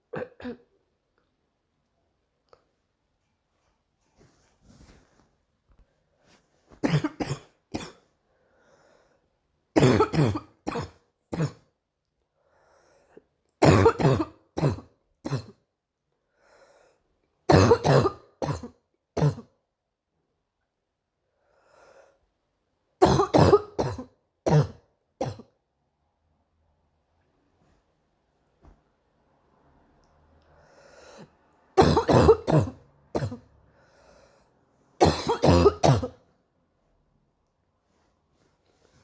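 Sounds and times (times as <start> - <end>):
girl barking cough: 6.8 - 8.0, 9.8 - 11.7, 13.6 - 15.6, 17.5 - 19.5, 23.0 - 25.5, 31.8 - 33.5, 35.0 - 36.2
faint breath drawn in: 33.7 - 34.7.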